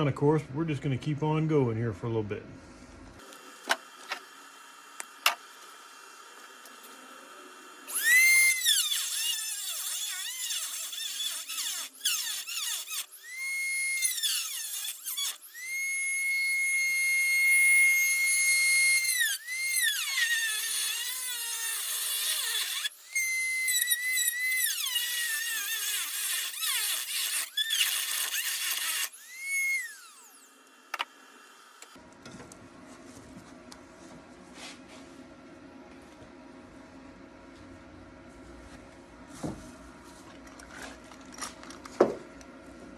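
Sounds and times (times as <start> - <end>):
rotary tool grinding metal: 7.9 - 31.1.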